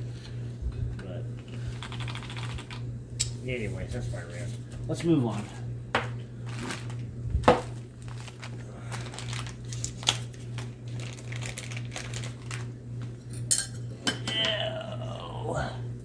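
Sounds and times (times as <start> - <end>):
steady low hum: 0.0 - 16.0
plastic packaging crinkling: 6.2 - 13.2.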